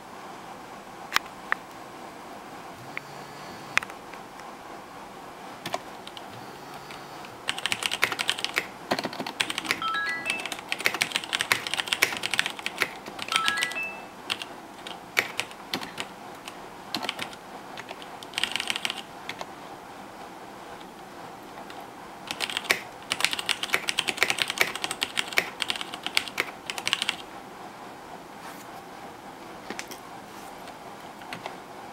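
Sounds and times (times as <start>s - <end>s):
mechanical keyboard key clacks: 10.7s - 13.5s.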